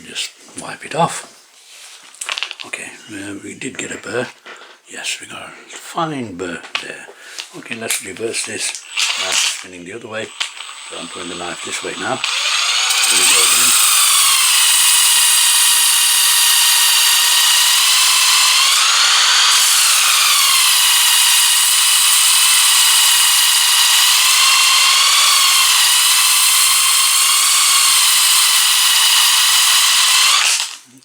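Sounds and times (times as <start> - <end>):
power sander whining: 8.8 - 30.8.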